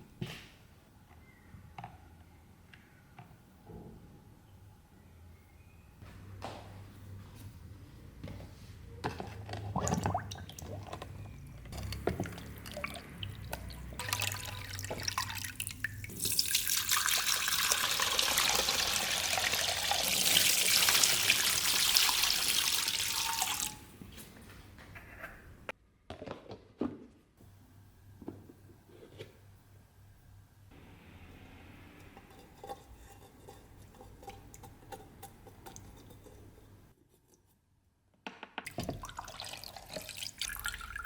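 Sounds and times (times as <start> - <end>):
water running from a tap: 12.5 - 23.8, 38.7 - 41.0.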